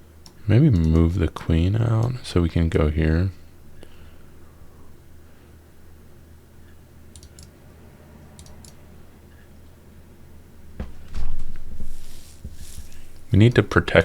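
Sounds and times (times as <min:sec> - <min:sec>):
steady low hum: 0:00.0 - 0:14.0
computer mouse clicking: 0:07.1 - 0:07.6, 0:08.4 - 0:08.8.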